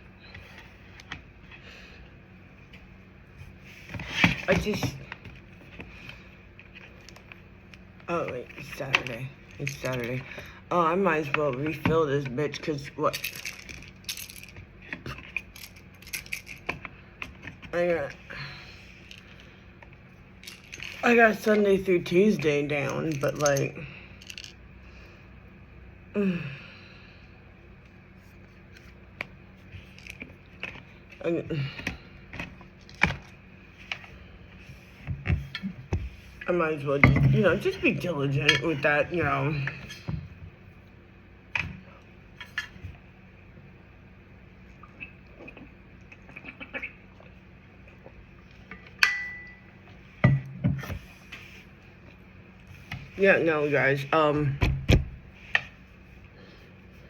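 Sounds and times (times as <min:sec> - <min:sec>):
person sighing: 0:26.1 - 0:27.0.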